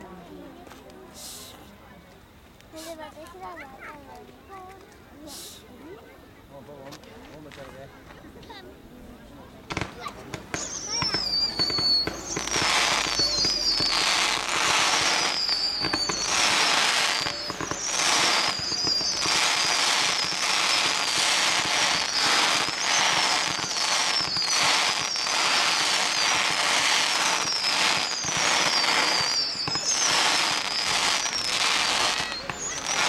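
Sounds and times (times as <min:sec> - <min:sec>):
fireworks crackling bursts: 0:01.0 - 0:01.7, 0:02.5 - 0:05.8, 0:09.2 - 0:33.0
falling firework whistles: 0:09.7 - 0:33.0.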